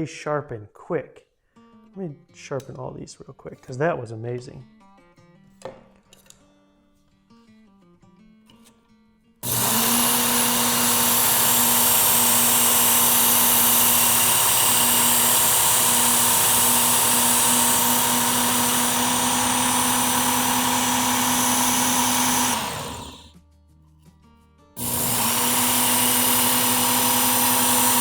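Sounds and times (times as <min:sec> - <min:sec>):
electric belt sharpener running: 0:09.4 - 0:23.3, 0:24.8 - 0:28.0.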